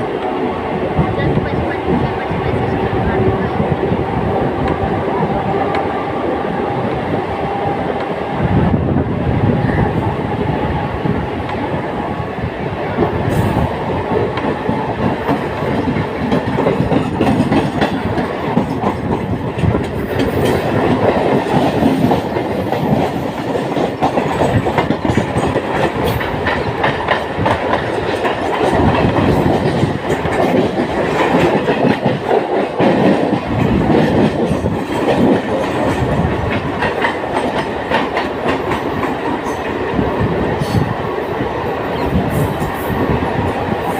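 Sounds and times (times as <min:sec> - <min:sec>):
train wheels clattering over joints: 0:13.0 - 0:41.0.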